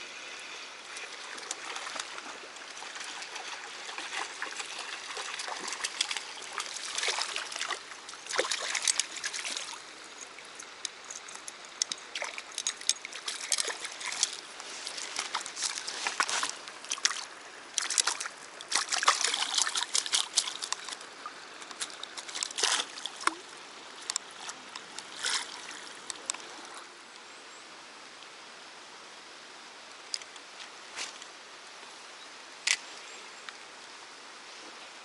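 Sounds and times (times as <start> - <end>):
faint steady hiss: 0.0 - 35.0
water splashing and sloshing: 0.4 - 26.9.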